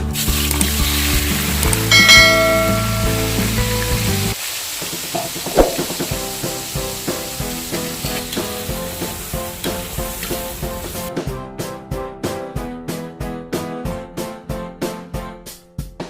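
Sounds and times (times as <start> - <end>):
oil sizzling in a pan: 0.0 - 11.1
spatula knocking on pan: 2.0 - 3.6.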